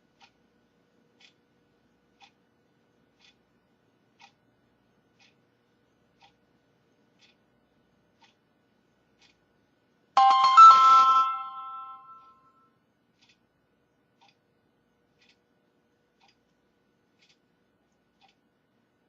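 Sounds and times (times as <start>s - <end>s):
phone start-up chime: 10.2s - 12.5s.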